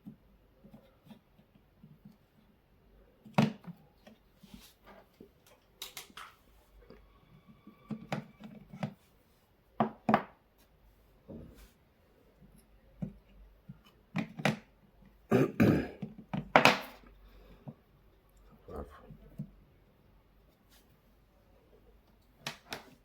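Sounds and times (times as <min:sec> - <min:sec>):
tools clicking and knocking: 0:05.4 - 0:06.4.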